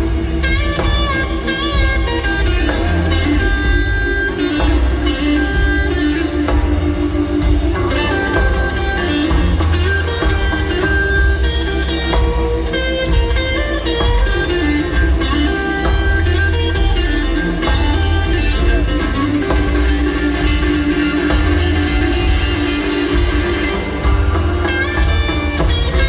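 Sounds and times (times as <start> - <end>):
live blues band playing: 0.0 - 26.0.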